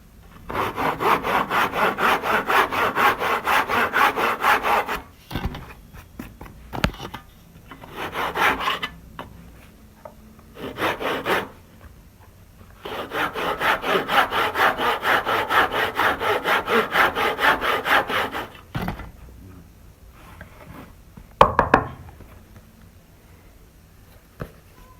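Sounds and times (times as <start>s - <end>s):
hand saw cutting wood: 0.4s - 5.1s, 7.8s - 9.0s, 10.6s - 11.6s, 12.8s - 18.6s.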